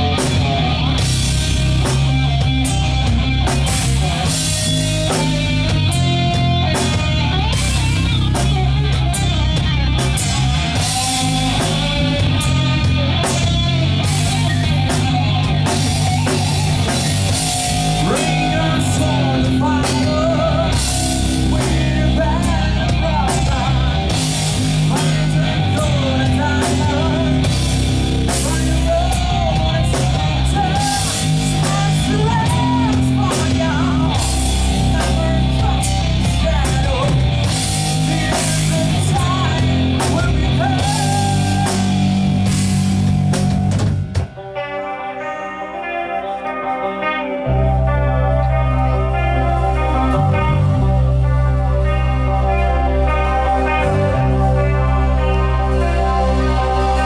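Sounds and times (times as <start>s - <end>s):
drum kit with cymbals: 0.0s - 44.6s
distorted electric guitars and bass: 0.0s - 57.0s
heavy rock band playing live: 0.0s - 57.0s
lead guitar line bending in pitch: 0.0s - 57.0s.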